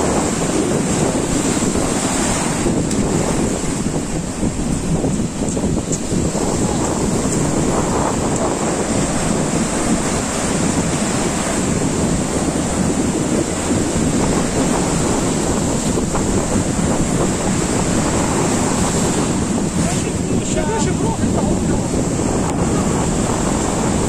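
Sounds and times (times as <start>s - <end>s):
sea waves washing on shore: 0.0s - 24.0s
wind buffeting microphone: 0.0s - 24.0s.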